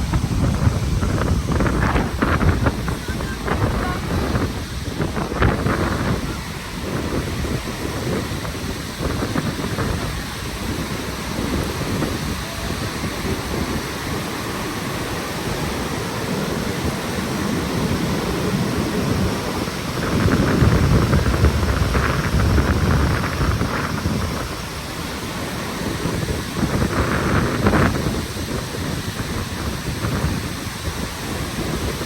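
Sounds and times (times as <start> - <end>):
waterfall rushing: 0.0 - 32.0
wind buffeting microphone: 0.0 - 32.0.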